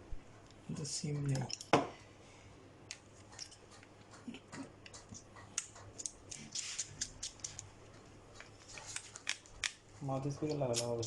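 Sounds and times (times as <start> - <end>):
small hand tools clicking and tapping: 2.9 - 7.6, 8.3 - 11.0.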